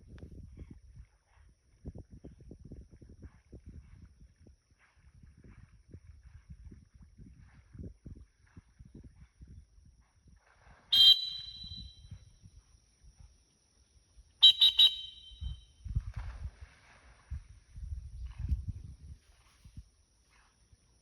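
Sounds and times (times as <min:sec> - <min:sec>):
high-pitched whistle blasts: 0:11.0 - 0:12.1, 0:14.4 - 0:15.7.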